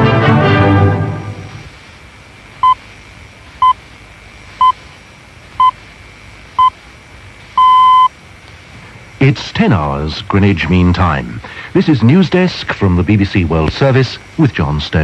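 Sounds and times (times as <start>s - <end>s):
steady hiss: 0.0s - 15.0s
short time signal pips: 7.6s - 8.1s.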